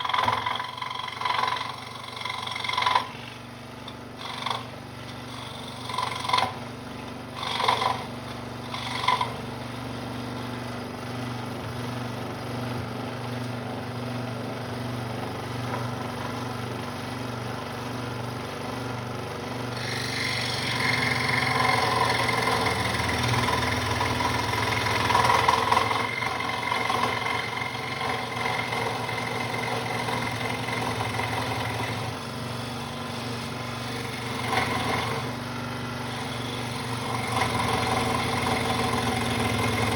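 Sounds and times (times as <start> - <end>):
saw rasping through wood: 0.0 - 10.8, 19.5 - 39.9
scroll saw humming: 0.0 - 12.4, 16.4 - 39.9.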